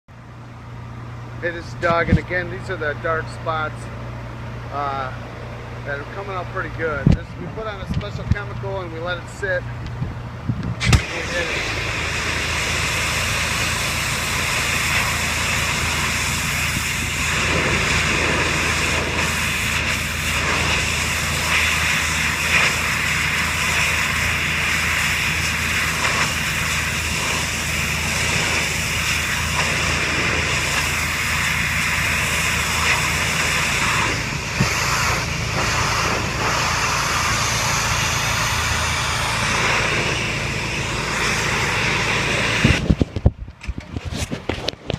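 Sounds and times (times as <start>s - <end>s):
pressure washer engine drone: 0.1s - 44.9s
high-pressure water spray hiss: 10.9s - 42.9s.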